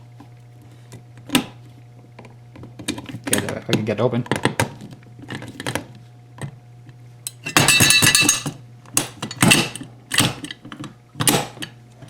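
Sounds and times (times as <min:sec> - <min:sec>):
steady low hum: 0:04.8 - 0:10.5
metal rattling: 0:07.3 - 0:08.5.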